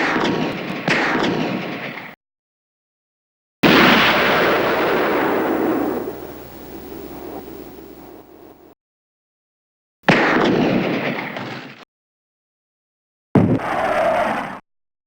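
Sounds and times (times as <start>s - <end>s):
gunshot with echo: 3.6s - 8.7s
loud blast with rolling decay: 3.6s - 8.7s.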